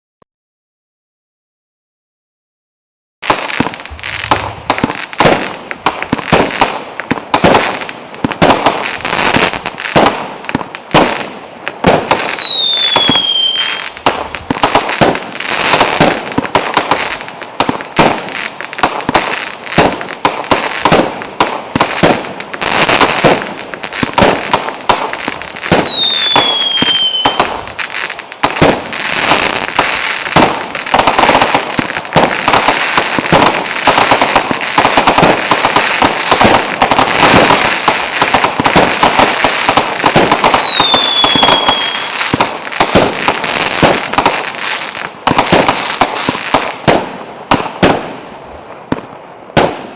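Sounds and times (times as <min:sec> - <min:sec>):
firework launch thumps and bangs: 0:03.6 - 0:08.7
firework falling whistle: 0:11.8 - 0:14.0, 0:25.2 - 0:27.6, 0:40.0 - 0:42.4.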